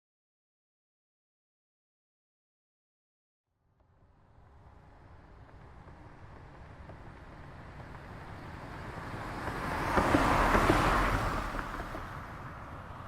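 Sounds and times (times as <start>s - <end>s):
car passing by: 4.0s - 13.0s.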